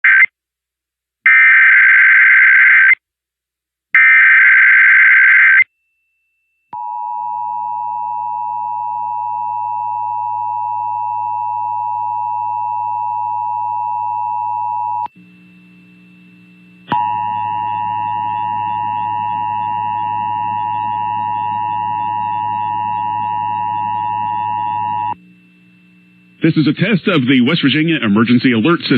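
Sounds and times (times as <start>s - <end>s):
steady attention tone: 5.9s - 28.9s.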